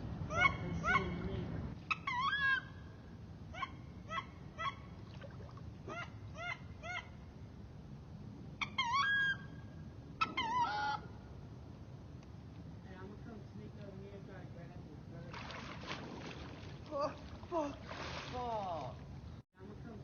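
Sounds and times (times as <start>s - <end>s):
duck squealing calls: 10.2s - 11.1s.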